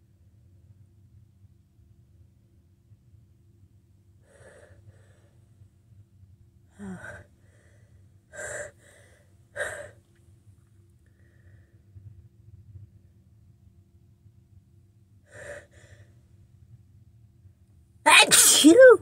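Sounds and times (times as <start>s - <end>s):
person gasping breaths: 6.8s - 10.0s, 15.3s - 16.2s.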